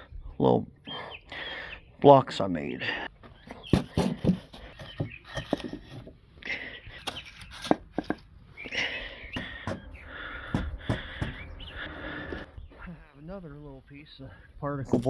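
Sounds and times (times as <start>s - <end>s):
scraping and rustling: 3.3s - 9.6s
wooden blocks knocking: 7.6s - 12.5s.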